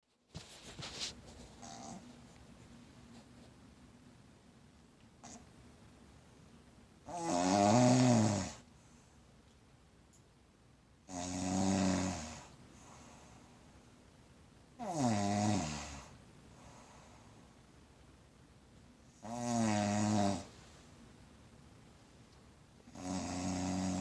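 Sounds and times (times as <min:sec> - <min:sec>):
person snoring: 0:07.1 - 0:08.6, 0:11.1 - 0:12.5, 0:14.8 - 0:16.1, 0:19.2 - 0:20.5, 0:22.9 - 0:24.0.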